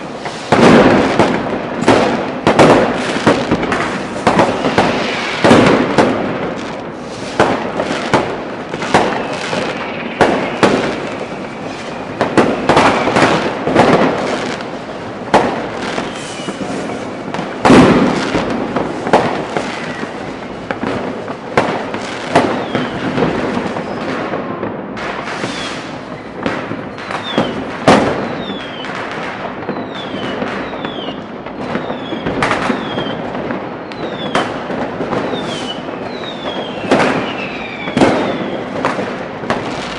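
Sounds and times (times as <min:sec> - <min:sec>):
fireworks banging and crackling: 0:00.0 - 0:39.9
rocket whistles: 0:03.1 - 0:14.6, 0:15.8 - 0:17.0, 0:19.6 - 0:20.6, 0:22.4 - 0:24.2, 0:25.3 - 0:29.0, 0:29.7 - 0:34.6, 0:35.2 - 0:38.8.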